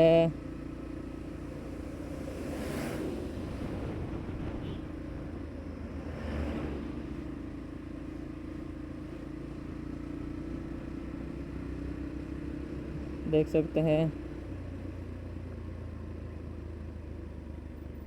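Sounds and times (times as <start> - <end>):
motorcycle engine idling: 0.0 - 2.2, 7.3 - 18.0
large vehicles passing: 0.0 - 18.0.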